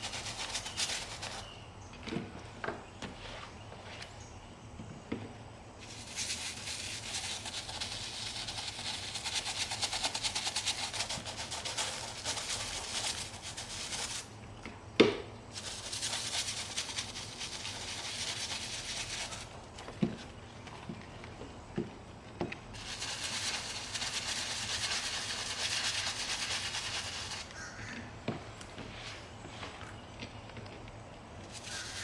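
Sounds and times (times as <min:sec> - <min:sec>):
brush scrubbing leather: 0:05.9 - 0:14.3, 0:15.6 - 0:19.5, 0:22.8 - 0:27.4.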